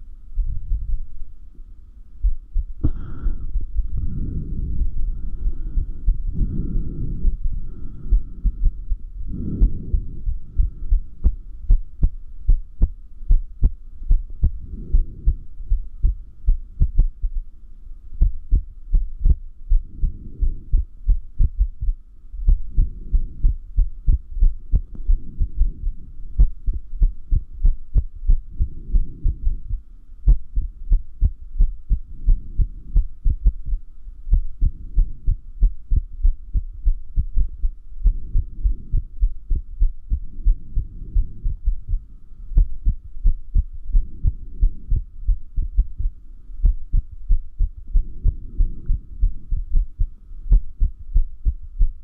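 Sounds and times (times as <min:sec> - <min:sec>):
heartbeat thumps: 0:00.3 - 0:01.4, 0:02.2 - 0:17.5, 0:18.2 - 0:52.0
soft rushing swells: 0:02.8 - 0:11.7.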